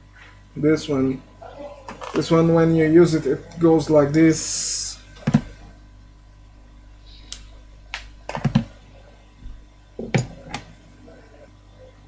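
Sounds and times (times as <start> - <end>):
low steady hum: 0.0 - 12.0
hand tools clicking and tapping: 8.3 - 8.7.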